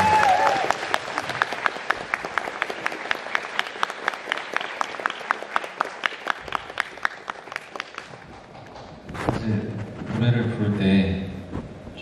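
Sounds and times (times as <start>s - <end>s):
audience applause: 0.0s - 8.7s
close hand claps: 0.0s - 8.8s.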